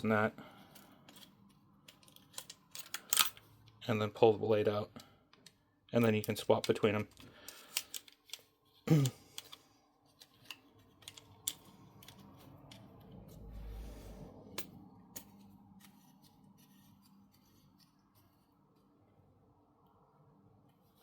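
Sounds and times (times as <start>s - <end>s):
faint metallic clicks and scraping: 0.6s - 3.8s, 4.9s - 19.0s
rubbing handling noise: 5.4s - 19.2s.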